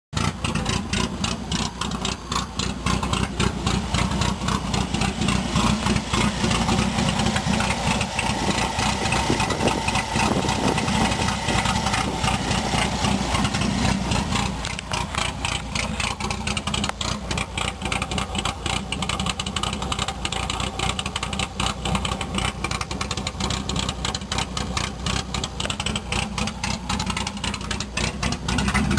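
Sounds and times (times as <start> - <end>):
car engine idling roughly: 0.1 - 28.9.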